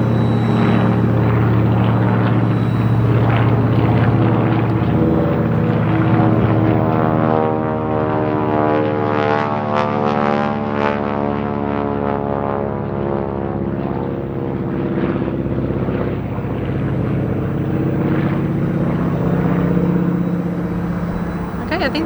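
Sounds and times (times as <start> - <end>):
propeller airplane engine droning: 0.0 - 8.7, 13.6 - 22.0.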